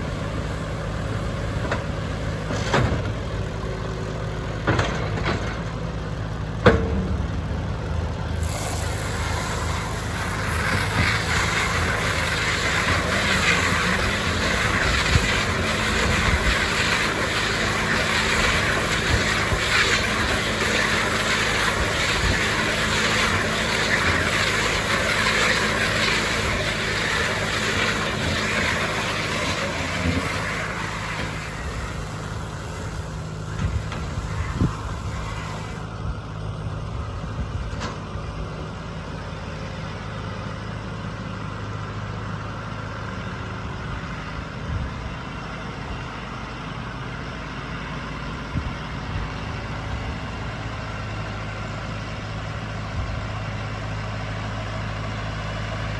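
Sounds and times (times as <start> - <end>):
tractor and baler running: 0.0 - 55.9
loud hiss: 8.4 - 35.9.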